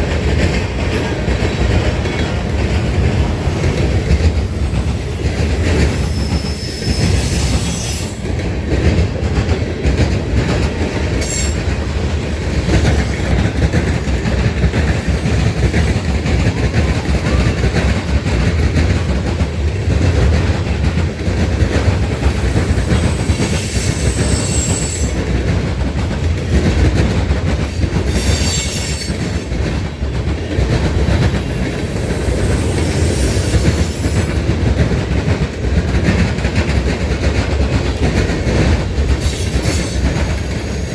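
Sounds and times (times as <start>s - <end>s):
train wheels clacking: 0.0s - 40.9s
wheel squeals: 5.7s - 8.2s, 22.3s - 25.2s, 27.7s - 29.6s.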